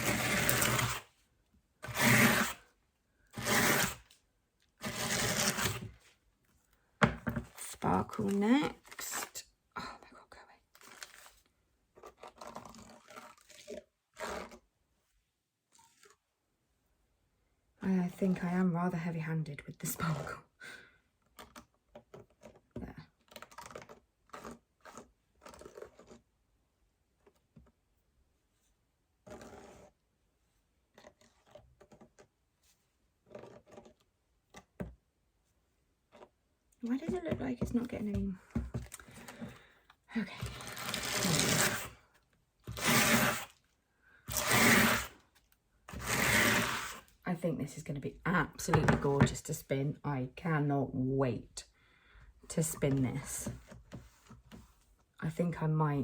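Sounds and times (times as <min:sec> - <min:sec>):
wool scratching on carding cloth: 0:40.6 - 0:41.9.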